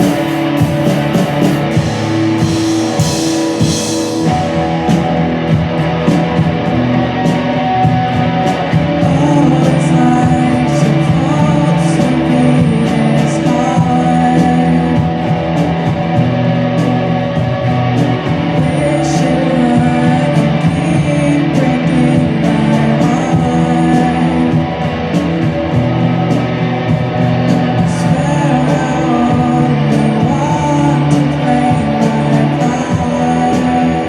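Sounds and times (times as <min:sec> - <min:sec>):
rock band playing: 0:00.0 - 0:34.0.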